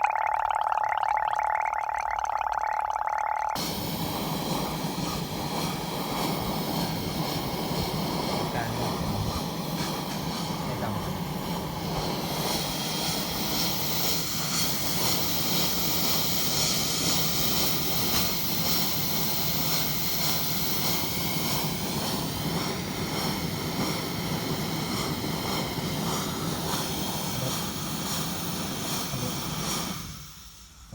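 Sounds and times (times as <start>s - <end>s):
pressure lantern hissing: 3.6s - 30.9s.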